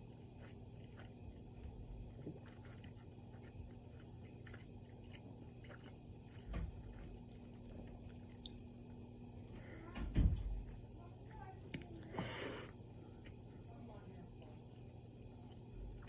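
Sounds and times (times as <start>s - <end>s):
person chewing: 0.0s - 9.5s.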